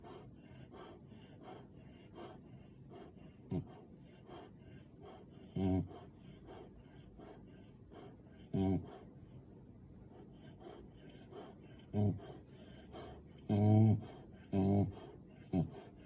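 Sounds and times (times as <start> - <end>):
puppy snorting: 0.0 - 9.1, 10.1 - 16.0
puppy snoring: 3.0 - 9.1, 10.2 - 16.0.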